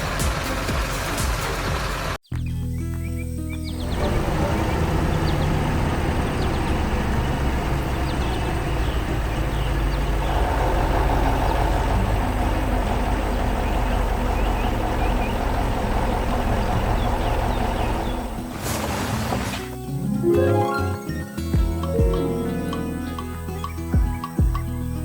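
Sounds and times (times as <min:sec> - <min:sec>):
heavy diesel engine running: 0:00.0 - 0:02.2, 0:03.8 - 0:19.6.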